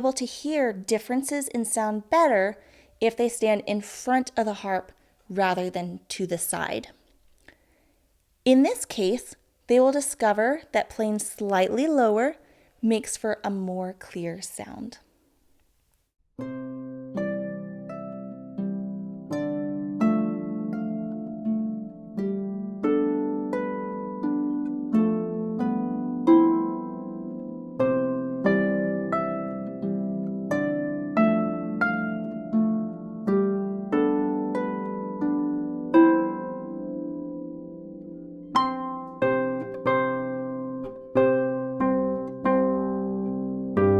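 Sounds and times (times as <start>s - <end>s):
harp plucked melody: 16.4s - 43.9s.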